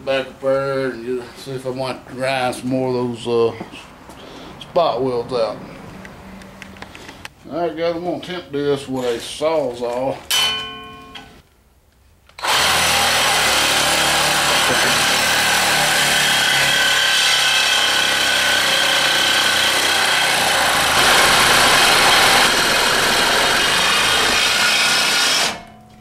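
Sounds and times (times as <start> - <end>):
reciprocating saw cutting metal: 12.4 - 25.8.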